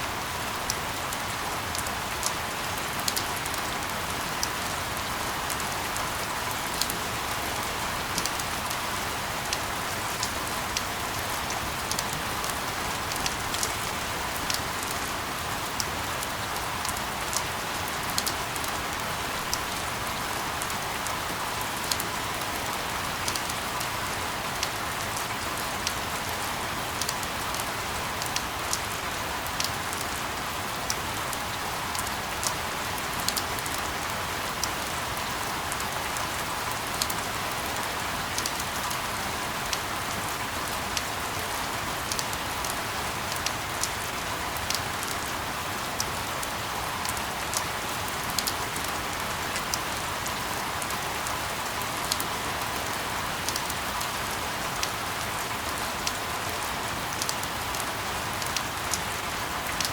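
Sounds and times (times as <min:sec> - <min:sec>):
steady rain hiss: 0:00.0 - 0:59.9.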